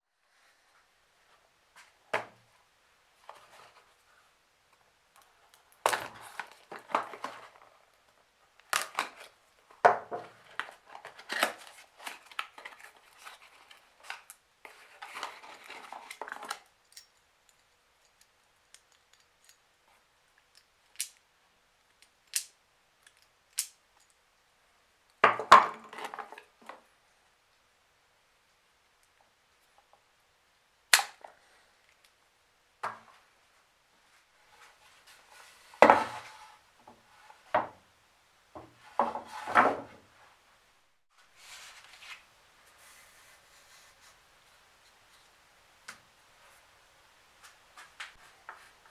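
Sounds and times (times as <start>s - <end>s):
rustling and scraping: 34.0s - 37.8s, 38.6s - 40.4s, 41.1s - 45.4s.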